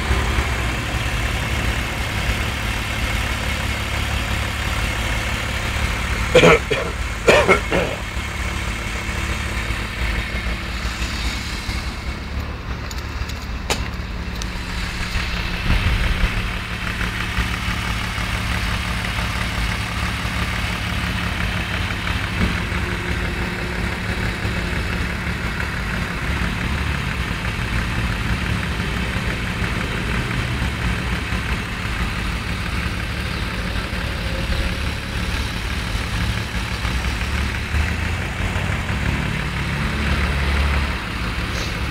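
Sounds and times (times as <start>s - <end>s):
old engine idling: 0.0s - 41.9s.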